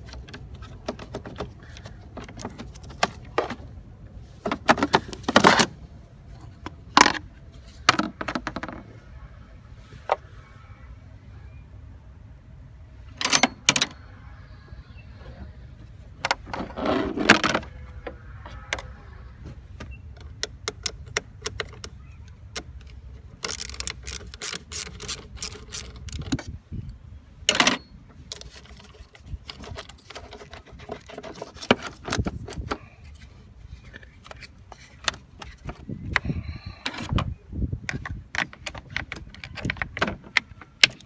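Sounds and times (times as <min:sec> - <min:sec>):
sharp clicks and knocks: 0:19.7 - 0:26.6.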